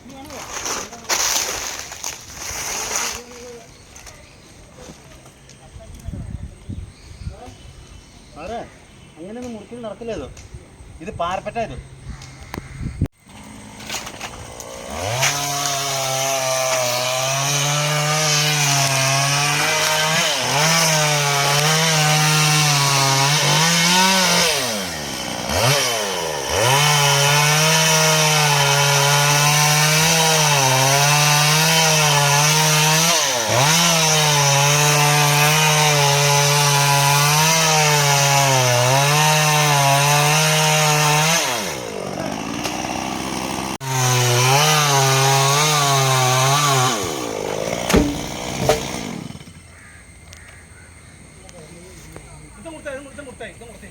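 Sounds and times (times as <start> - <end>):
chainsaw cutting wood: 13.2 - 49.7.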